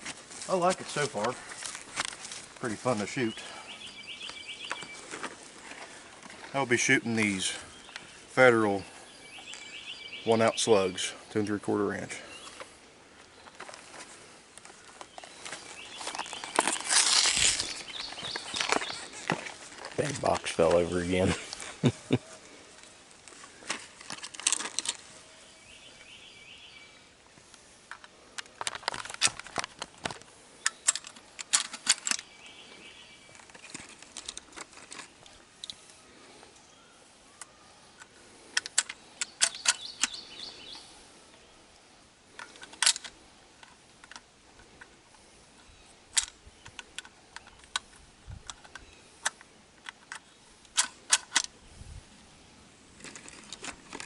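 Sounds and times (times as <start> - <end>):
clicks and knocks of handling: 27.9 - 32.3, 38.0 - 40.2, 42.3 - 44.9, 53.0 - 54.0
faint bird chirps: 36.0 - 37.9.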